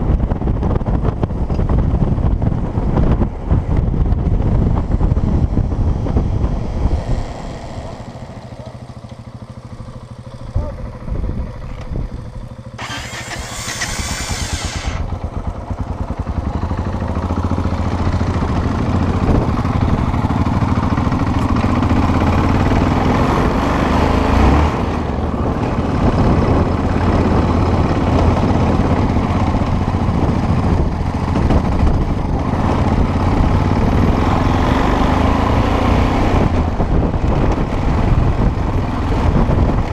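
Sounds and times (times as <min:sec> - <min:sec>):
motorcycle engine running: 0:00.0 - 0:39.9
brief hiss: 0:12.8 - 0:15.1.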